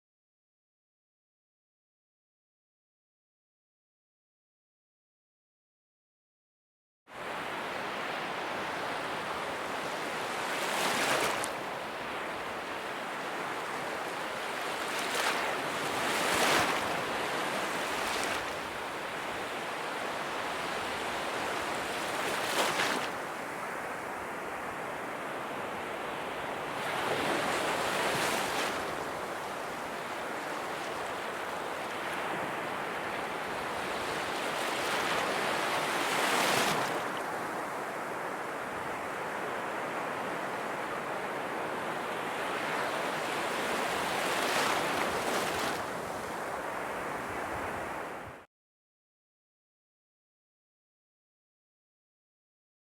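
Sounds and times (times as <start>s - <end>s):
small waves washing in: 7.3s - 47.6s.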